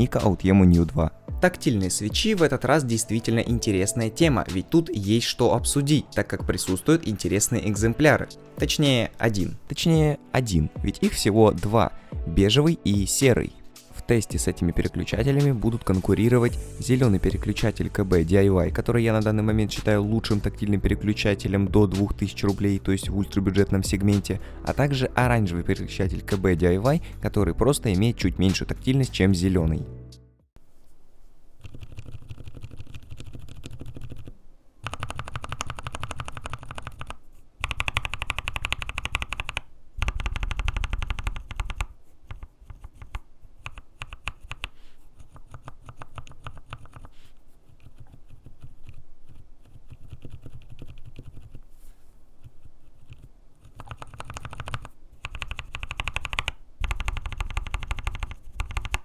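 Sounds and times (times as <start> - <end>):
typing on mechanical keyboard: 31.6 - 47.1, 47.8 - 51.6, 53.0 - 59.0.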